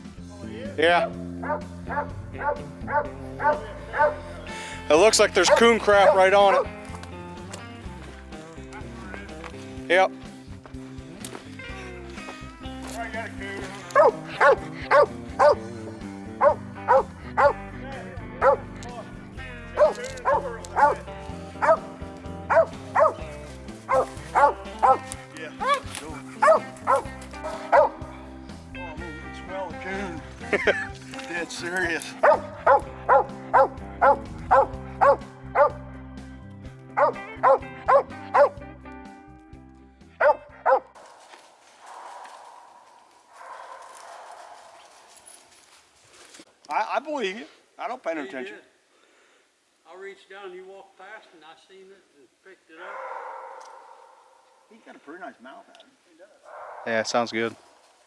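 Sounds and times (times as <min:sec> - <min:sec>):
background music: 0:00.0 - 0:45.4
dog barking: 0:01.0 - 0:06.8, 0:12.8 - 0:15.7, 0:16.3 - 0:17.6, 0:18.4 - 0:18.8, 0:19.7 - 0:28.3, 0:32.0 - 0:35.9, 0:36.9 - 0:38.6, 0:40.2 - 0:41.0, 0:41.8 - 0:45.1, 0:52.8 - 0:54.7, 0:56.4 - 0:57.2.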